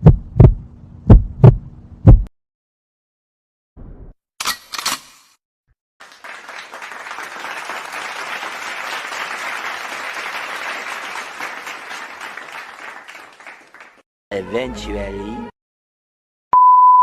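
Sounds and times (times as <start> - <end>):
crowd applause: 6.0 - 14.0.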